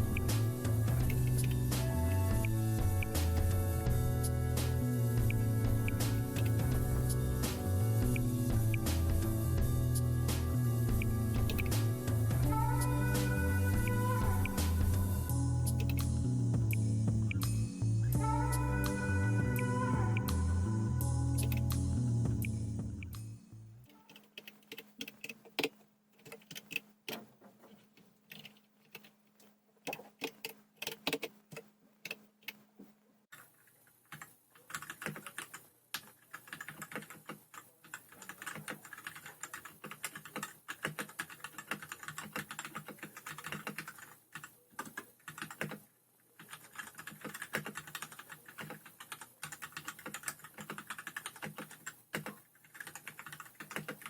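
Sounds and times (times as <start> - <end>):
mechanical keyboard typing: 23.9 - 27.3, 28.3 - 29.2, 29.9 - 32.6, 34.1 - 45.8, 46.4 - 54.0.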